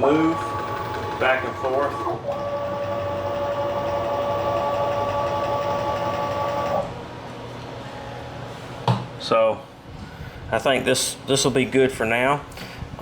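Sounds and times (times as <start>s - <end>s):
stepper motor whine: 0.0s - 6.9s.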